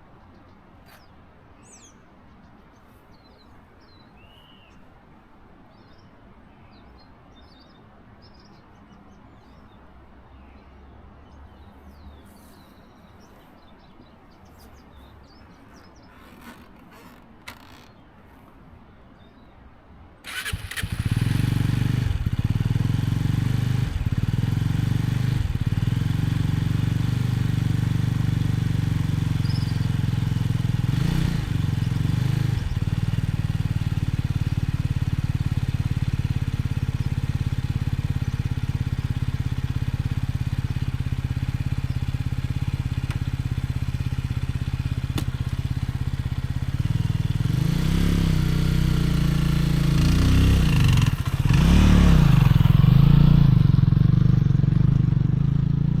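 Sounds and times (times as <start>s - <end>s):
motorcycle engine revving: 20.3s - 56.0s.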